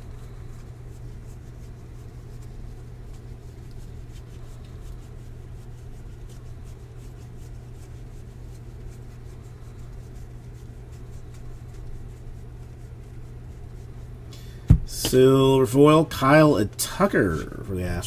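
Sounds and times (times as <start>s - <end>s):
steady low hum: 14.4s - 18.0s.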